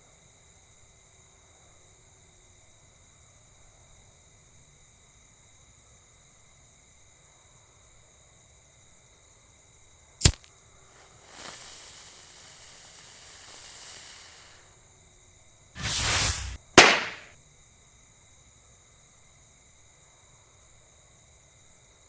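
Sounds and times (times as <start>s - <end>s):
crickets chirping: 0.0s - 22.0s
bottle rocket hiss: 10.2s - 14.7s, 15.8s - 17.3s
bottle rocket rush: 11.0s - 14.6s, 15.8s - 17.3s
bottle rocket bang: 15.8s - 17.3s.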